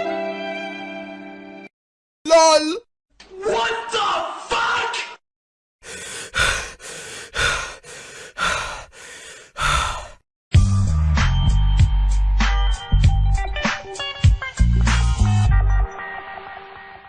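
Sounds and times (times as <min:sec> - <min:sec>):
person breathing heavily: 0:05.8 - 0:10.2
funky music: 0:10.6 - 0:16.4.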